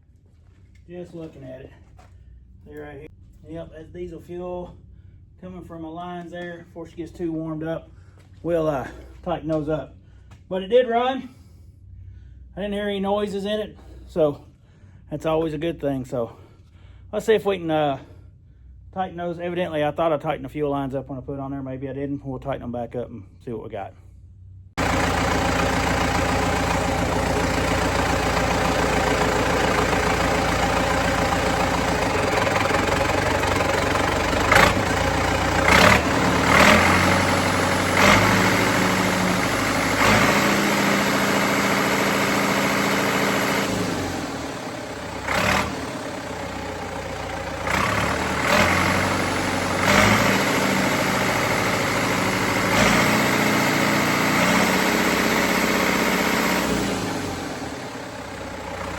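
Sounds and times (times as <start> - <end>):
diesel engine idling: 24.8 - 58.9.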